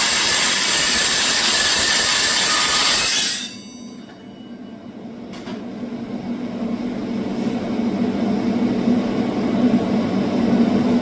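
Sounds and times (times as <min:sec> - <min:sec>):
circular saw running: 0:00.0 - 0:03.6.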